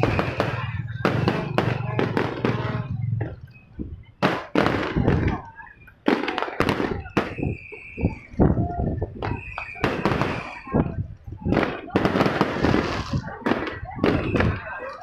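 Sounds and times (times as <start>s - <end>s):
fireworks bangs and crackles: 0.0s - 15.0s.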